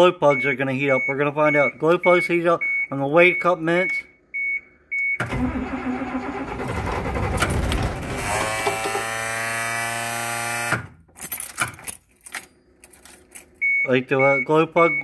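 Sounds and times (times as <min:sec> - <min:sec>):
starter motor cranking engine: 0:05.2 - 0:09.2.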